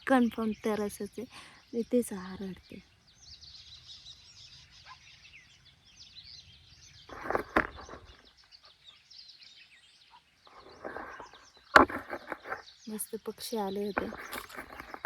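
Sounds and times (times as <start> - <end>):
small birds chirping: 0.0 - 15.0
brief rustle: 7.1 - 8.3, 10.5 - 12.7, 13.8 - 15.0.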